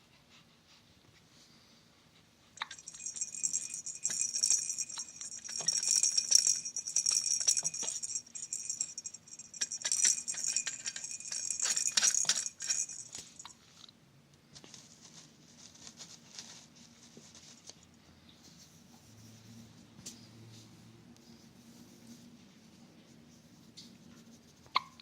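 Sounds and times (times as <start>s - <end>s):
small metal bell jingling: 2.6s - 13.5s.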